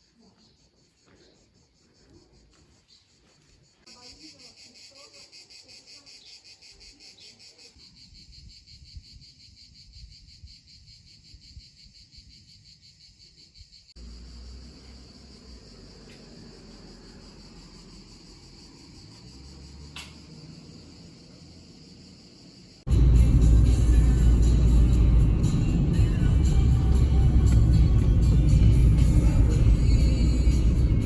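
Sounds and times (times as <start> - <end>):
insects chirring: 0.0 - 31.0.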